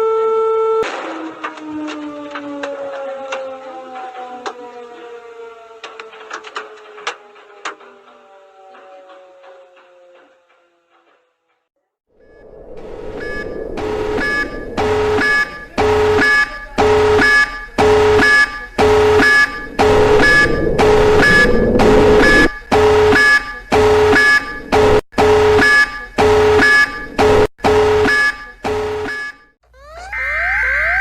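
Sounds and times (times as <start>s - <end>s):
alert alarm tone beeping: 12.5s - 29.4s.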